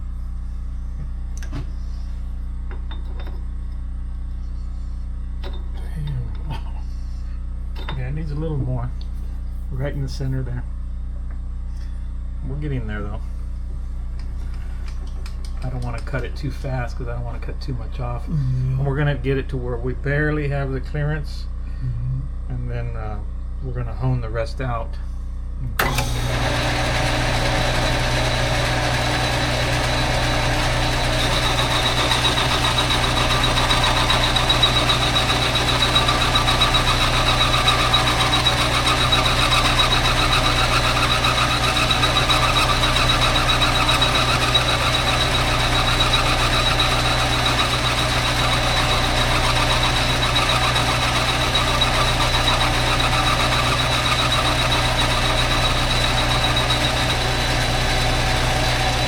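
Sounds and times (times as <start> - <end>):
metal lathe running: 25.8 - 59.0
steady high whine: 26.7 - 59.0.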